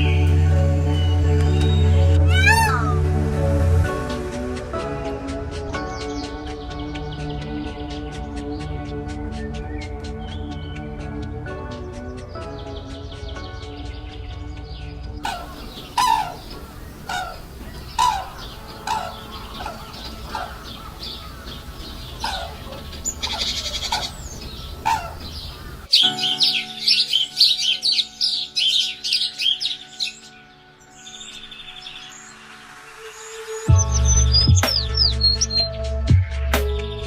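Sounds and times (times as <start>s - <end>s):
fast high bird chirps: 15.2s - 30.2s
bird falling call note: 15.3s - 29.8s.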